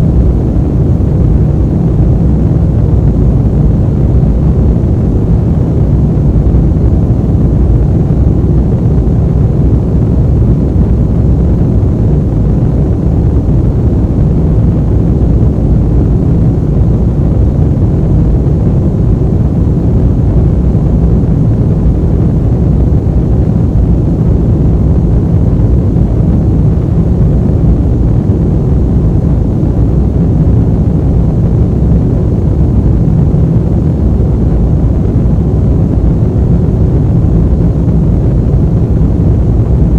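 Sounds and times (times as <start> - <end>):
airplane cabin rumble: 0.0 - 39.9.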